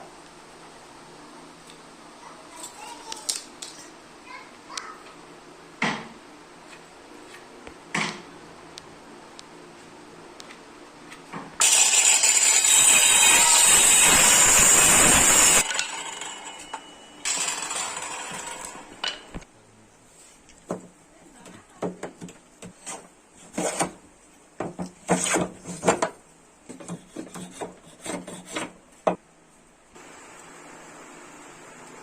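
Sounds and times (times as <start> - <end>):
scraping strokes on wood: 22.6 - 24.0, 24.6 - 29.2.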